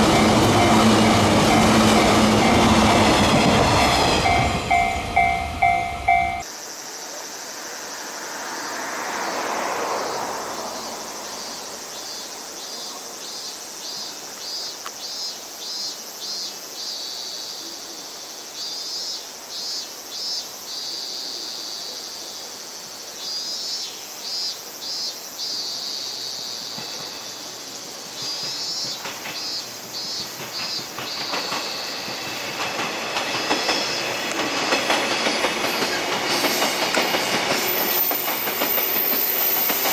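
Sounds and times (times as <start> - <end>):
train wheels clicking on rails: 0.0 - 6.4, 26.4 - 39.9
train rushing noise: 0.0 - 6.5, 8.4 - 11.9, 26.2 - 39.9.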